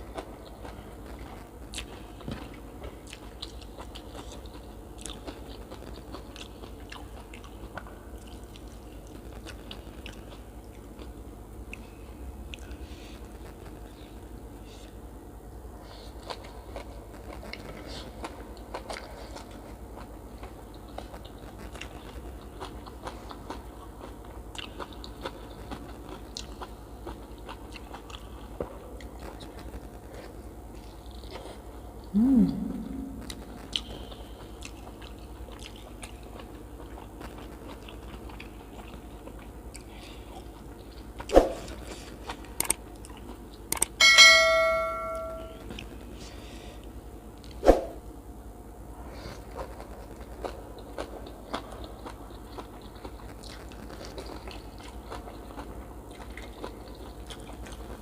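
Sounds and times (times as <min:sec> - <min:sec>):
chewing and biting: 0:00.1 - 0:11.8, 0:16.2 - 0:31.7, 0:33.3 - 0:43.9, 0:49.3 - 0:58.0
ringing clink: 0:44.0 - 0:45.6.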